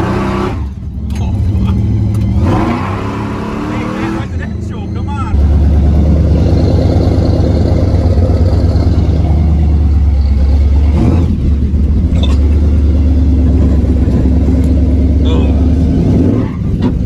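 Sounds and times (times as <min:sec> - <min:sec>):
engine running with deep rumble: 0:00.0 - 0:17.0.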